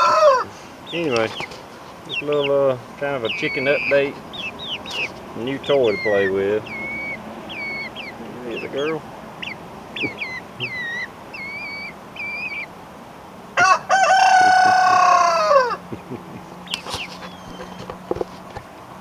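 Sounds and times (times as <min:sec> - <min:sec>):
rooster crowing: 0:00.0 - 0:00.6, 0:13.6 - 0:15.9
chickens chirping: 0:00.0 - 0:19.0.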